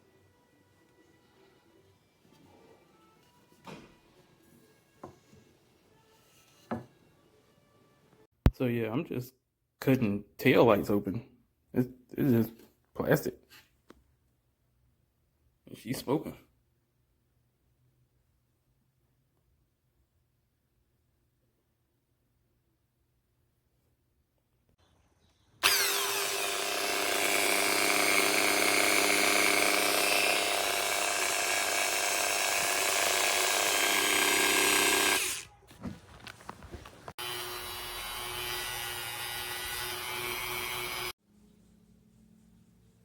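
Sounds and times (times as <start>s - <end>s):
rotary tool cutting plastic: 25.6s - 35.5s.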